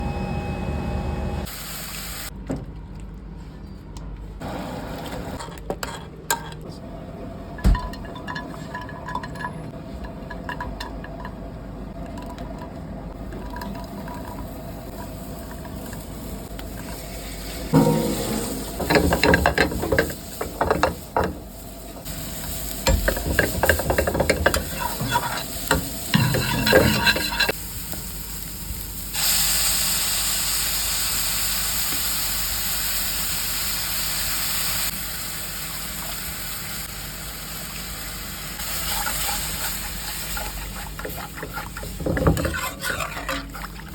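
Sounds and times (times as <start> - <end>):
food sizzling in a pan: 13.9 - 43.5
utensil scraping and clinking pan: 16.9 - 21.4, 22.8 - 27.6, 38.9 - 43.9.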